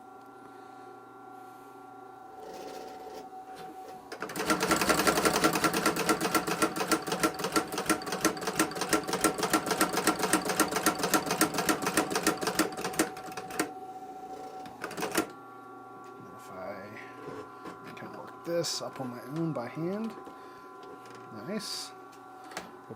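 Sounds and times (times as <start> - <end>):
sewing machine clatter: 4.2 - 13.6.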